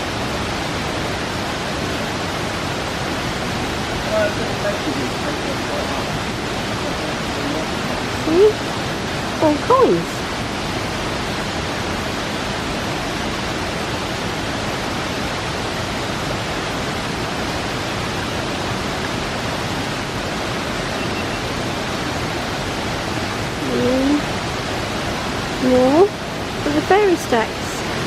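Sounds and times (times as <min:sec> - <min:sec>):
waterfall rushing: 0:00.0 - 0:28.0.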